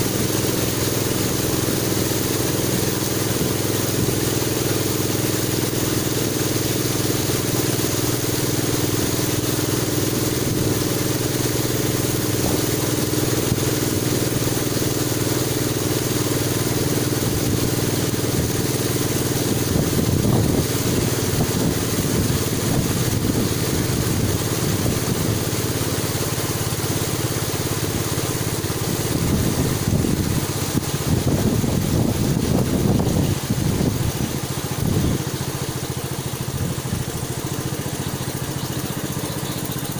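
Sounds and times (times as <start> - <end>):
boat engine running: 0.0 - 39.9.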